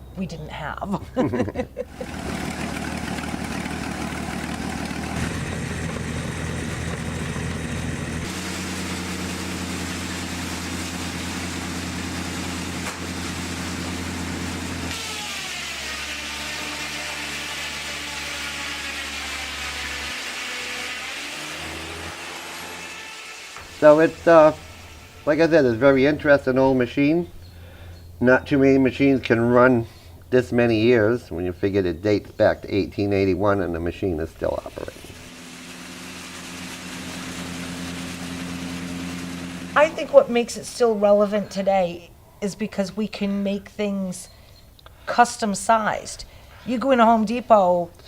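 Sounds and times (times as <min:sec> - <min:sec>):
truck engine running: 0:01.2 - 0:15.0, 0:34.8 - 0:40.6
high whine varying in pitch: 0:34.9 - 0:40.3.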